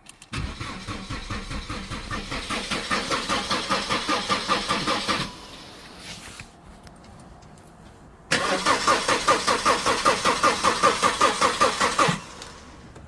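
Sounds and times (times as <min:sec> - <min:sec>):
car engine cranking on starter: 0:00.2 - 0:05.7, 0:08.3 - 0:12.8.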